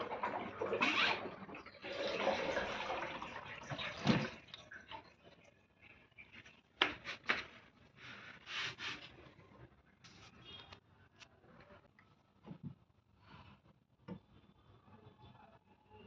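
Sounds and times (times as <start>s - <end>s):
water running and splashing: 0.0s - 5.5s.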